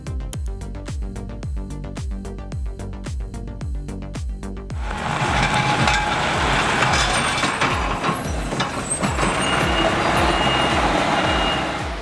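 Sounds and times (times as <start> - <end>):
music with low thumping beat: 0.0 - 12.0
truck diesel engine running: 4.8 - 12.0.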